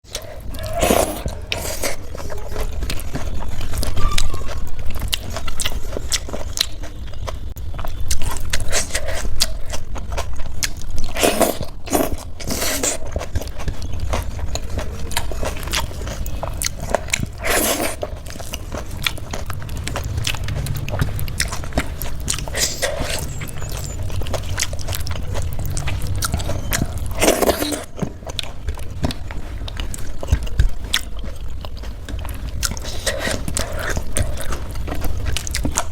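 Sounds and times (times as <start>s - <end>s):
wet chewing: 0.0s - 35.9s
low hum: 14.4s - 28.9s.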